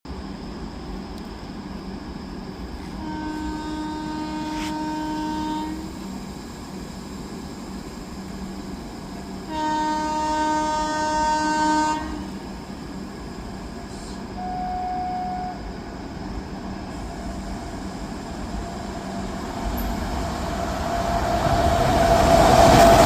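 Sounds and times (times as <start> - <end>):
train rumble: 0.1 - 23.0
locomotive horn blasts: 3.0 - 5.9, 9.5 - 12.3, 14.4 - 15.6.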